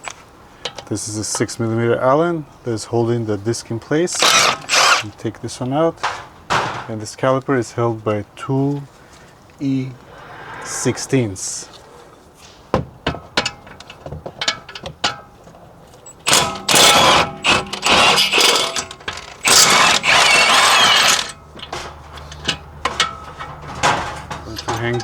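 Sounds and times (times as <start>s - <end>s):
tools and sockets clinking: 0.6s - 0.9s, 15.9s - 25.0s
power wrench running: 4.2s - 5.0s, 16.3s - 21.4s.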